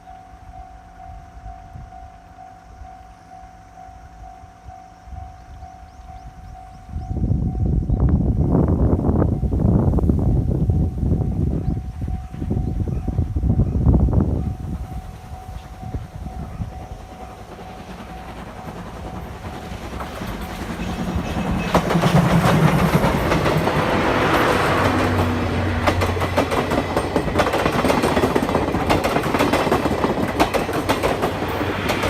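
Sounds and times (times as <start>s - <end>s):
steam train passing: 0.0s - 32.0s
wheels clattering on rails: 14.3s - 32.0s.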